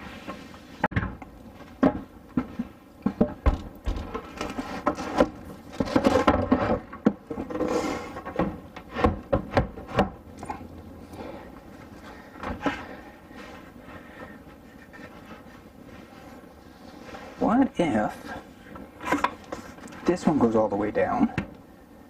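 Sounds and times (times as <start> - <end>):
scraping and rubbing: 3.9 - 10.0, 11.6 - 20.1.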